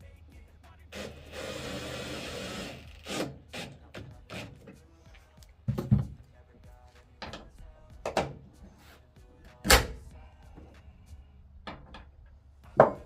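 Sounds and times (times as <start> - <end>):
background music: 0.0 - 13.0
metal tool knocks and clunks: 12.8 - 13.0.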